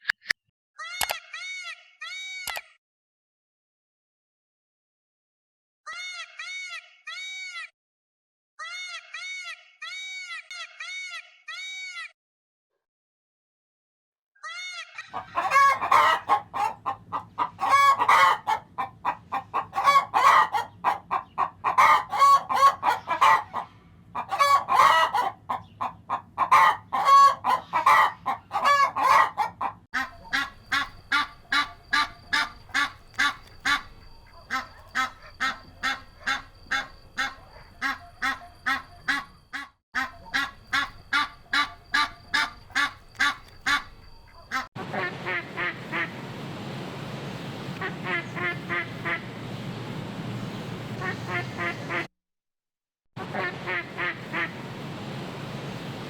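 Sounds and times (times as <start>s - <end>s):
fowl calling: 14.4s - 46.2s, 47.8s - 49.4s, 51.0s - 52.1s.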